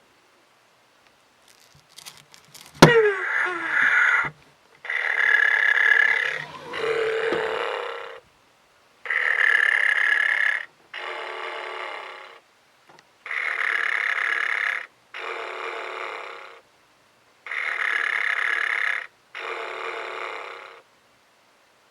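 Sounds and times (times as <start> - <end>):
toy snoring sound: 2.8 - 8.2, 9.1 - 12.4, 13.3 - 16.6, 17.5 - 20.9.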